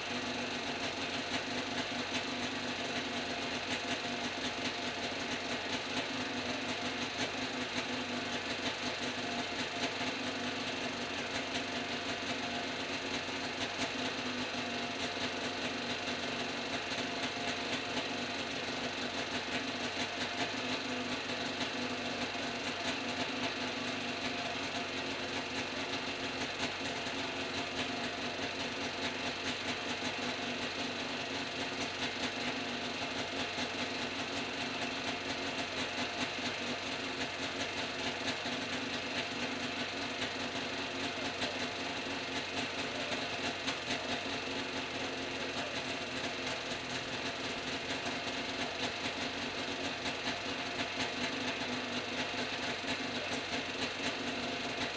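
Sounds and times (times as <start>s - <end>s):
small engine running fast: 0.0s - 54.9s.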